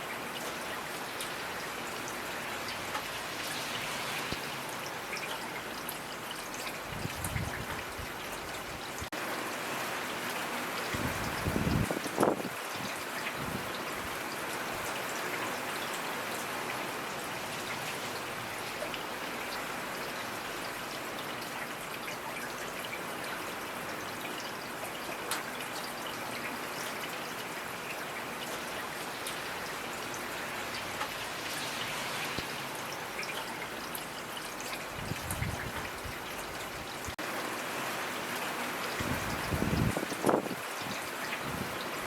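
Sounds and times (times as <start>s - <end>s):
steady rainfall: 0.0s - 42.0s.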